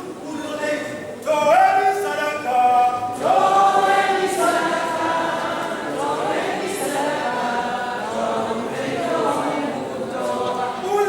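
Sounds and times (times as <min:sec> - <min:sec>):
choir singing held notes: 0:03.0 - 0:11.0.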